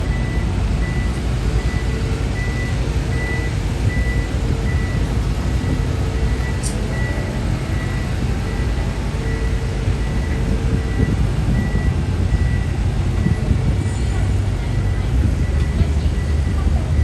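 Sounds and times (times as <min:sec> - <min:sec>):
electronic warning beeper: 0:00.0 - 0:12.7
diesel engine low rumble: 0:00.0 - 0:17.0.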